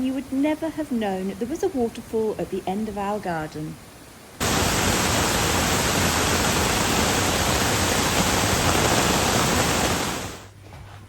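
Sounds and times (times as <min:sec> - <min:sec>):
torrent of water rushing: 0:04.4 - 0:10.5.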